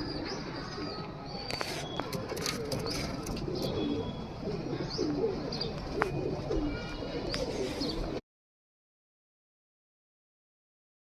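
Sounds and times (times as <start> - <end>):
pigeons cooing: 0.0 - 8.2.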